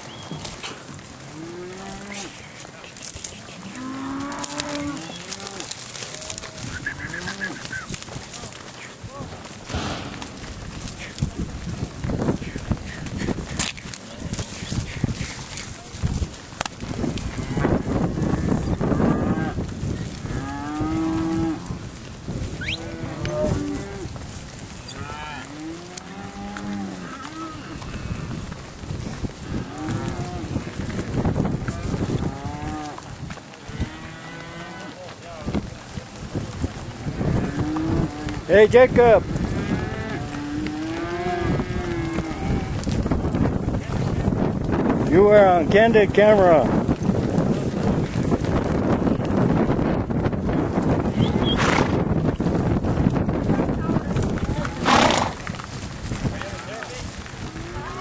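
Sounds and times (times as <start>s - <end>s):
cattle mooing: 1.3s - 2.4s, 3.5s - 7.9s, 20.3s - 21.8s, 22.6s - 24.1s, 24.9s - 28.4s, 29.5s - 30.6s, 39.5s - 42.9s, 57.5s - 58.0s
rough noise: 9.7s - 12.6s, 51.1s - 52.2s.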